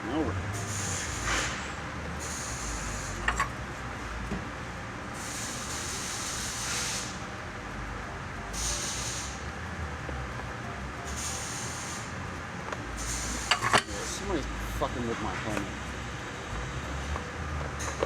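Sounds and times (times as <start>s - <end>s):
workshop hum: 0.0s - 18.0s
welding arc hiss: 0.6s - 3.4s, 5.1s - 7.3s, 8.5s - 9.5s, 11.1s - 12.2s, 12.9s - 15.0s.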